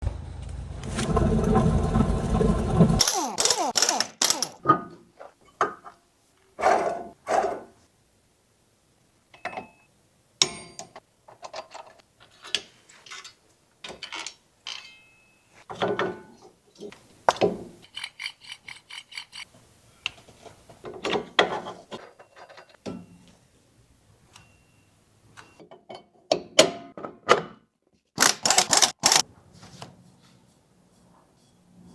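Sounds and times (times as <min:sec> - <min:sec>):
metal parts knocking and clicking: 0:03.0 - 0:04.6, 0:28.2 - 0:29.2.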